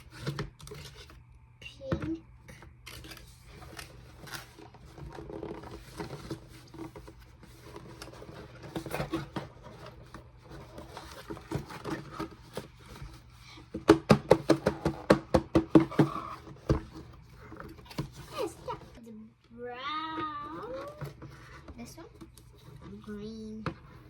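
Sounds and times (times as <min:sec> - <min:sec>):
plastic packaging rustling: 0:02.9 - 0:13.6.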